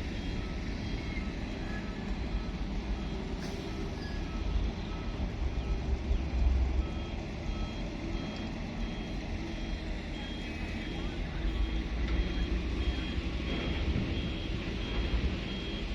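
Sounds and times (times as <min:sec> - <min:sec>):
heavy diesel engine: 0:00.0 - 0:15.9
backup alarm beeping: 0:06.8 - 0:15.9.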